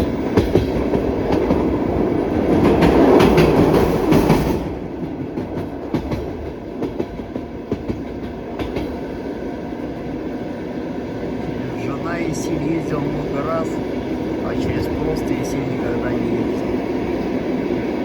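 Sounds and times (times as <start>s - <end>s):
train wheels clattering over rail joints: 0.0s - 9.2s
train running rush: 0.0s - 18.0s.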